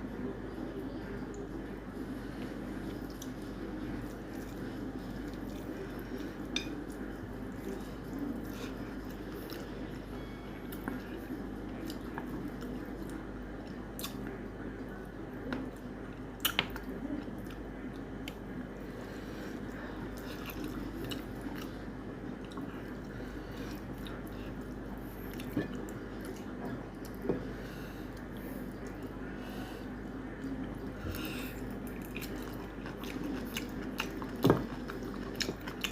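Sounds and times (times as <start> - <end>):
steady low hum: 0.0 - 35.9
person chewing food: 2.4 - 14.3, 19.1 - 29.2, 29.8 - 35.9.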